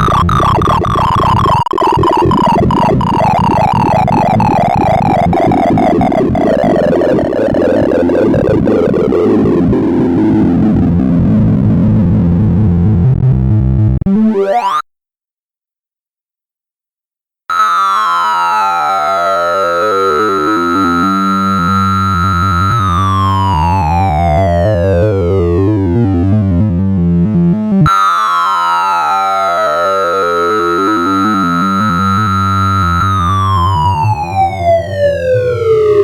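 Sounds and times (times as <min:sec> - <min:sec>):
synthesized beeping tones sliding down: 0:00.0 - 0:10.5, 0:14.0 - 0:14.9, 0:27.9 - 0:36.0.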